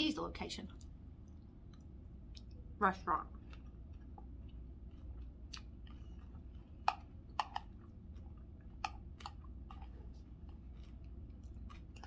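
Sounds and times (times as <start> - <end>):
person chewing food: 0.8 - 12.0
wet mouth clicks: 5.4 - 6.0.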